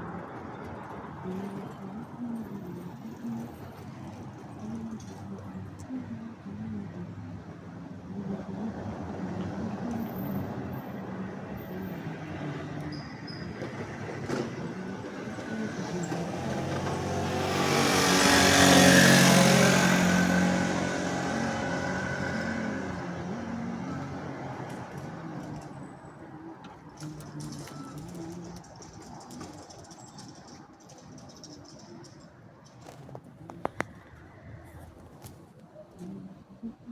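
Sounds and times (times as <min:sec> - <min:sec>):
engine passing by: 0:08.2 - 0:28.6.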